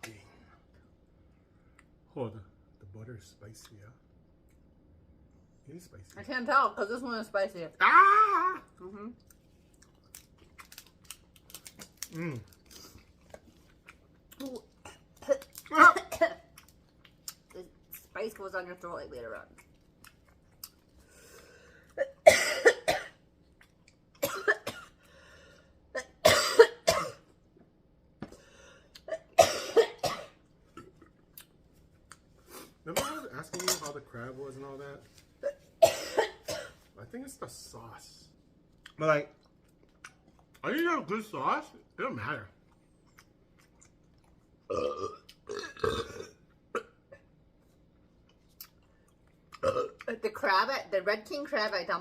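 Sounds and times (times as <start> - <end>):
person coughing: 22.0 - 23.1, 24.2 - 24.9, 26.0 - 27.3, 29.1 - 30.9, 35.4 - 36.8
person burping: 44.7 - 47.0, 49.6 - 50.0.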